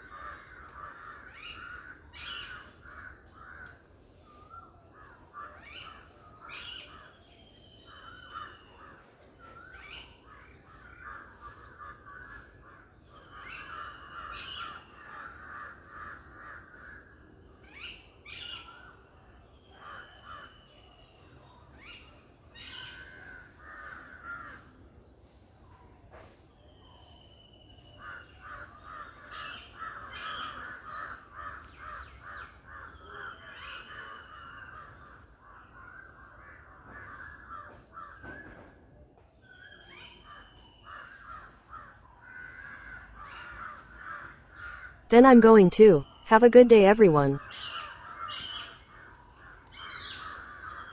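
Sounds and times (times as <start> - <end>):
steady high tone: 45.1 - 47.4.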